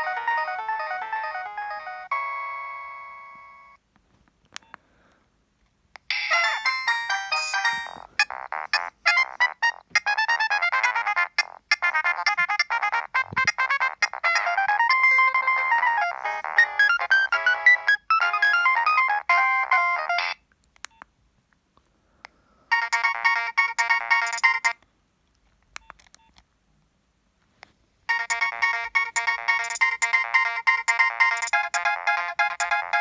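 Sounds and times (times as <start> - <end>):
busy phone ringtone: 0.0 - 3.8, 6.1 - 20.4, 22.7 - 24.8, 28.1 - 33.0
melodic phone ringtone: 0.0 - 3.8, 6.1 - 20.4, 22.7 - 24.8, 28.1 - 33.0.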